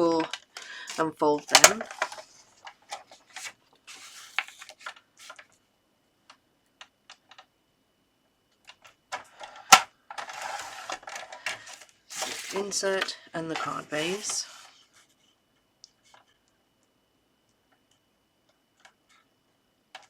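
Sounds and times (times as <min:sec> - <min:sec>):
scoring tool scraping paper: 0:03.1 - 0:05.4, 0:10.2 - 0:13.0, 0:13.6 - 0:15.0.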